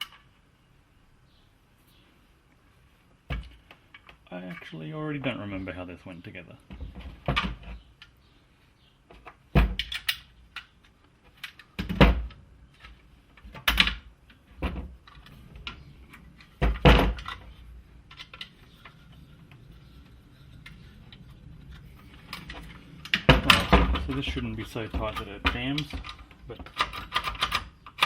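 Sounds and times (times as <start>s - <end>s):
nailer parts clunking and clicking: 20.6s - 28.0s.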